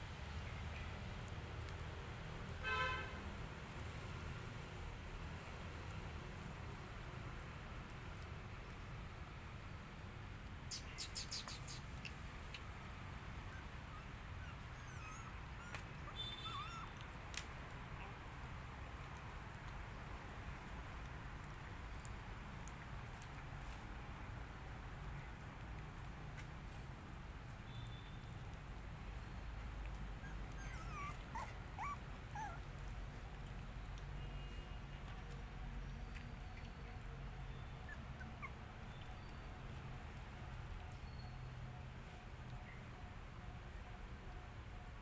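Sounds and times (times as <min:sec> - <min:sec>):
small animal squeaking: 0:10.7 - 0:12.0, 0:13.5 - 0:17.0, 0:30.2 - 0:32.6
puppy whimpering: 0:13.4 - 0:17.0, 0:30.2 - 0:32.7, 0:37.8 - 0:38.7.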